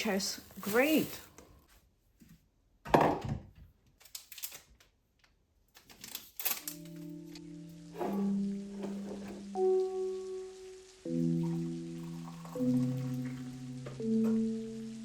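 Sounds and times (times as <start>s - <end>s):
soft music with sustained tones: 6.5s - 15.0s.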